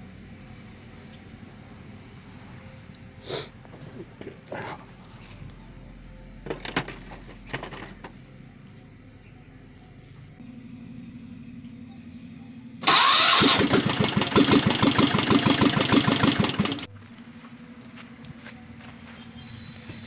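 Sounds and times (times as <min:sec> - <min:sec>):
electric starter motor cranking engine: 0:12.8 - 0:16.9.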